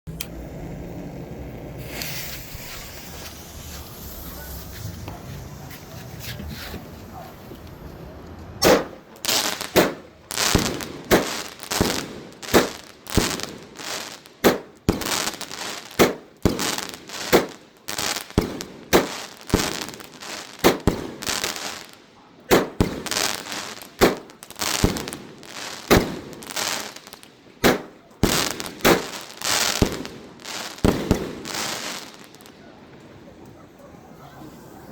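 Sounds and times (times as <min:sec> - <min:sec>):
fireworks bangs: 0:01.6 - 0:34.9.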